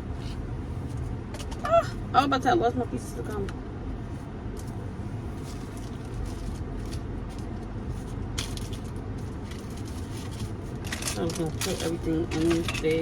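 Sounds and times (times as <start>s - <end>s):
car engine and road rumble: 0.0s - 13.0s
small items rustling and clicking: 8.4s - 13.0s.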